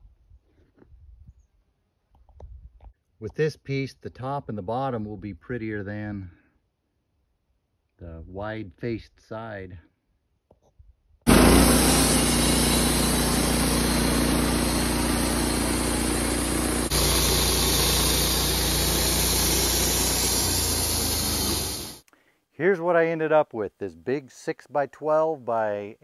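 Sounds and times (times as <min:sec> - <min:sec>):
band blade noise: 0:11.3 - 0:22.0
sawmill engine running: 0:11.3 - 0:22.0.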